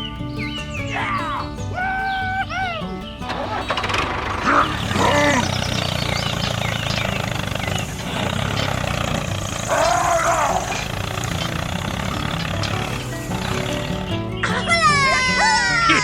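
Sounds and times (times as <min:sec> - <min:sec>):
motor humming: 0:03.0 - 0:16.0
rising and falling roar: 0:03.4 - 0:16.0.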